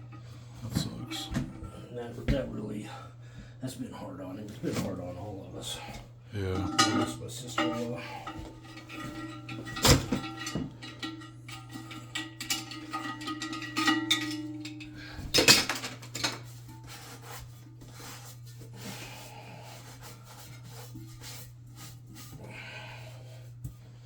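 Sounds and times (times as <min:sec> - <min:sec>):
steady low hum: 0:00.0 - 0:24.0
toilet parts knocking and clinking: 0:06.5 - 0:16.5.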